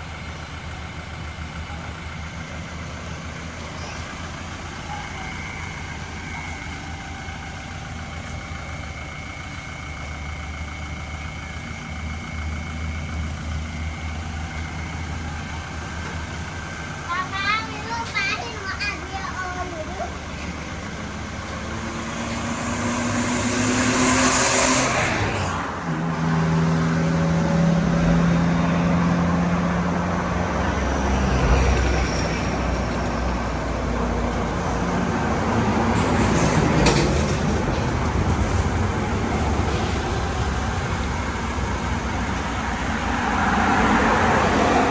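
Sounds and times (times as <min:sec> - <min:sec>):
vehicle engine running: 0:00.0 - 0:44.9.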